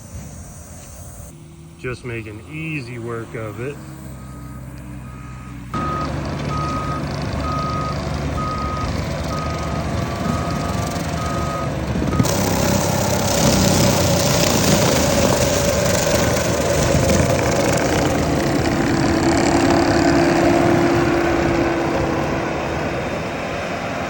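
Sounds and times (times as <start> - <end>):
diesel engine running: 0.0 - 24.0
backup alarm beeping: 3.0 - 13.3
strong hiss: 12.2 - 19.1.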